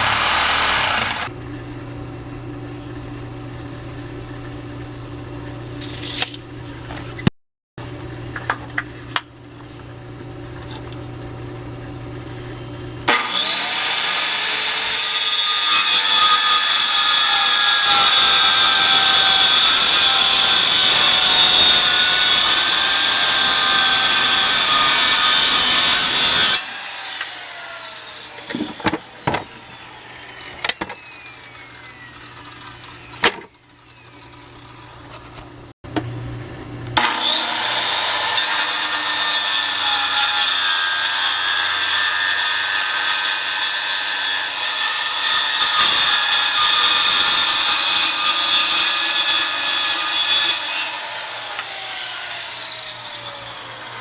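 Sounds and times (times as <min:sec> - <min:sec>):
power saw cutting wood: 0:00.0 - 0:01.3, 0:13.0 - 0:34.9, 0:37.0 - 0:54.0.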